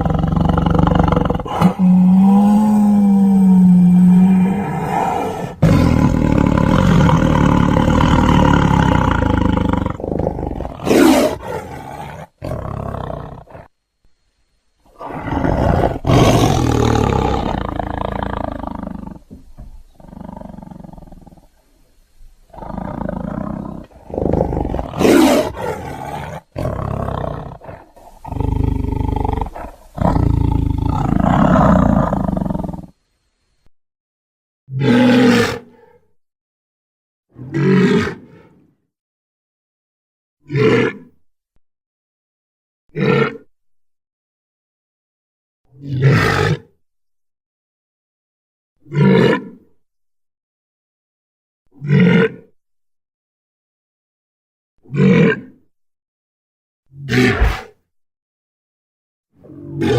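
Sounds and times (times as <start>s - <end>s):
loud animal-like cries: 57.1s - 57.7s.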